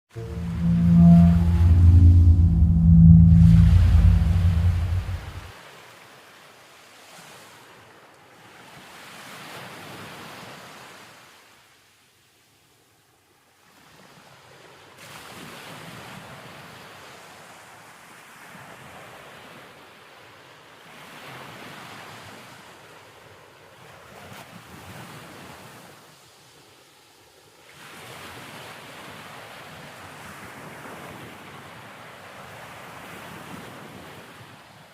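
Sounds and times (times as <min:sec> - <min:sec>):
rushing noise in surges: 0:00.2 - 0:05.5.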